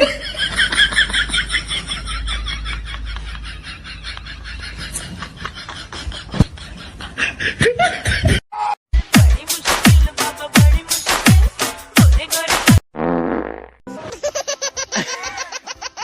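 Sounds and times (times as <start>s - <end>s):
stifled snickering laughter: 0.0s - 8.4s, 14.0s - 16.0s.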